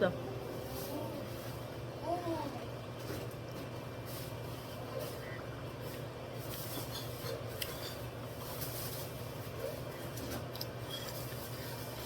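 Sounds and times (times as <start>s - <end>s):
exhaust fan humming: 0.0s - 12.0s.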